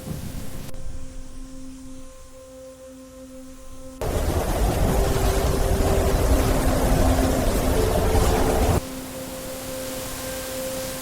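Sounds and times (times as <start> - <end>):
rushing rumbling wind: 4.0 - 11.0.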